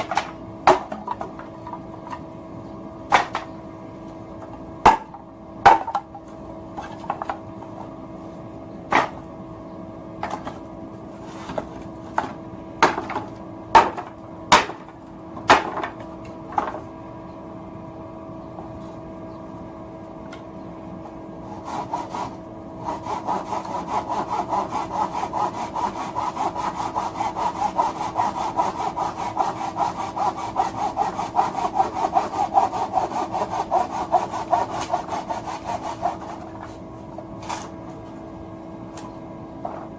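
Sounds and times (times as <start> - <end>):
steady low hum: 0.0 - 39.9
sharp wooden knocks: 3.1 - 3.5, 12.8 - 16.8
handsaw cutting wood: 21.5 - 36.8.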